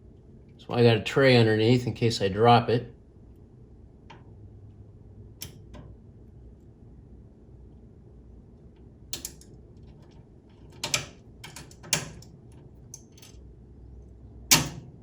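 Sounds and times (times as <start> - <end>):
clicks and clinks of small hardware: 9.2 - 9.6, 12.9 - 13.4.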